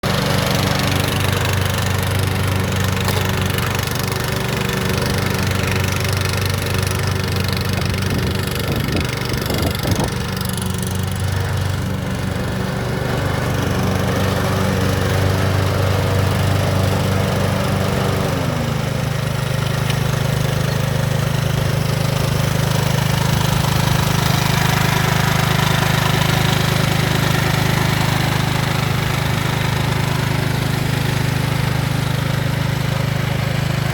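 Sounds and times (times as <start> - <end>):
lawnmower engine running: 0.0 - 33.9.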